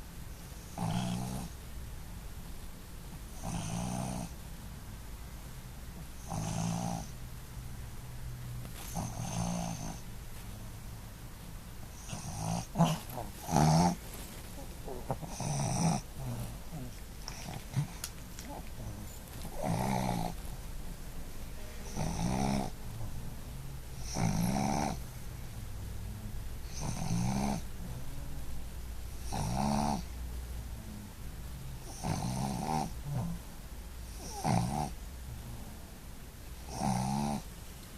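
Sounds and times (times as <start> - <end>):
dog snoring: 0.6 - 1.6, 3.3 - 4.4, 6.0 - 7.2, 8.7 - 10.1, 11.9 - 20.5, 21.8 - 23.3, 23.9 - 25.1, 26.6 - 28.0, 29.1 - 30.2, 31.8 - 33.5, 34.1 - 35.7, 36.6 - 37.5.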